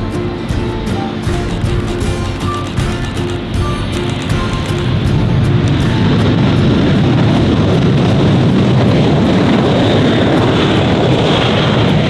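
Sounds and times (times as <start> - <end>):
jet engines roaring: 0.0 - 12.0.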